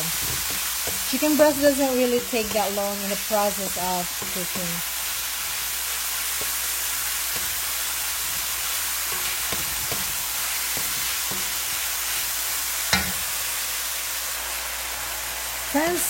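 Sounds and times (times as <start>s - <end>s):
chicken sizzling in oil: 0.0s - 16.0s
utensil knocking against pan: 7.3s - 7.7s, 9.1s - 11.7s.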